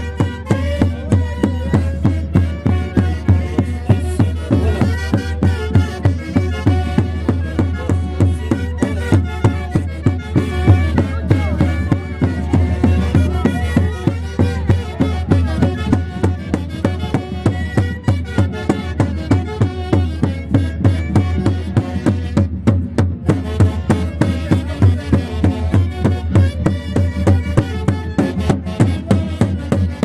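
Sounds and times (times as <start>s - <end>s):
steady drum beat: 0.0s - 30.0s.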